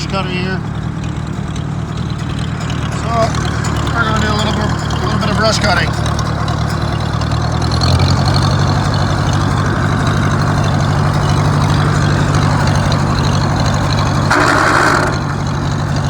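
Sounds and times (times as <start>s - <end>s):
tractor engine running: 0.0s - 16.0s
short loud noise: 14.3s - 15.6s.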